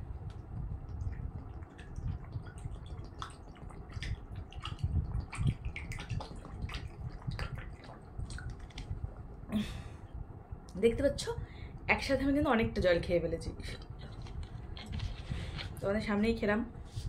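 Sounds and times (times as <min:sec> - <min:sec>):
water sloshing in a bottle: 0:00.0 - 0:09.5, 0:13.4 - 0:16.3
person swallowing gulps: 0:00.1 - 0:10.2.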